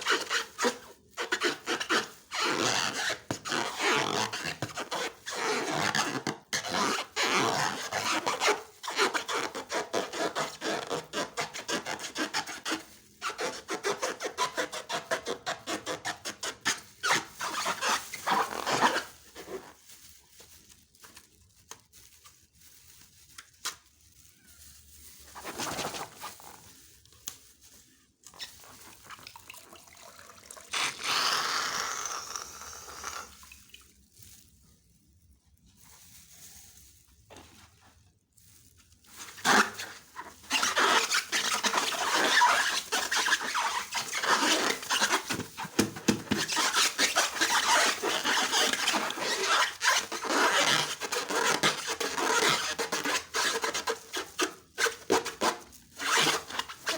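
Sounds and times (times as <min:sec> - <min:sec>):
slime squishing and squelching: 0:28.1 - 0:29.9, 0:38.3 - 0:56.9.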